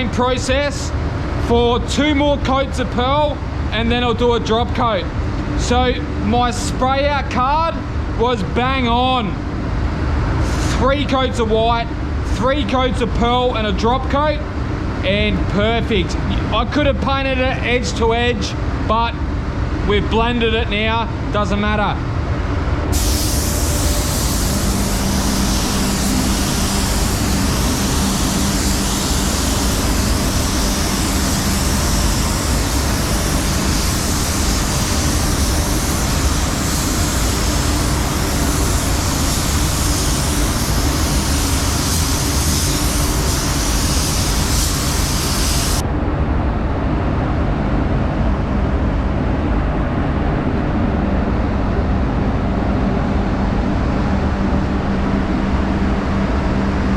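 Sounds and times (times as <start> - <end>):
low machine rumble: 0.0 - 56.9
spray gun hissing: 22.9 - 45.8.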